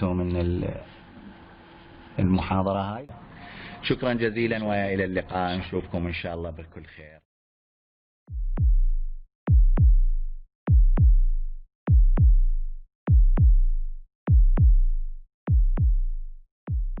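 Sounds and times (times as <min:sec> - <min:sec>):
electronic heartbeat thumps: 0:08.3 - 0:17.0.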